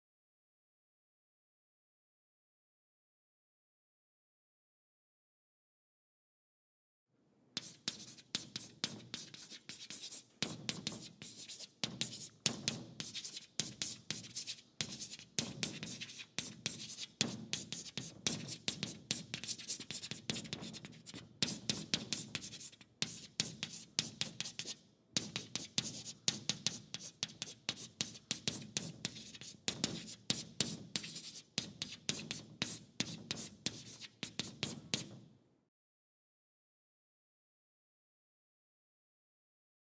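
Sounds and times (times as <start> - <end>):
chalk scratching on chalkboard: 7.6 - 35.2.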